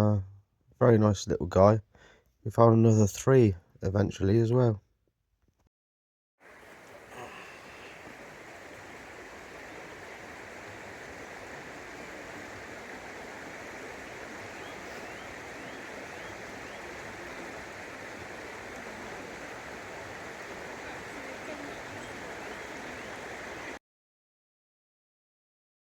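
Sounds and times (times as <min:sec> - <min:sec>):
stream water rushing: 0:06.4 - 0:23.8.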